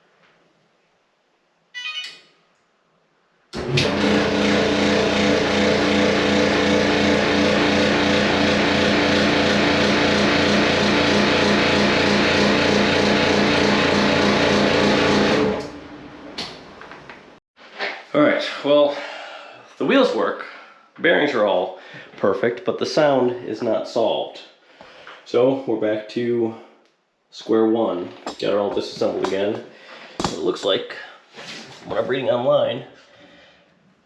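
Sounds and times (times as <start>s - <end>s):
clothes dryer running loudly: 3.6s - 16.7s.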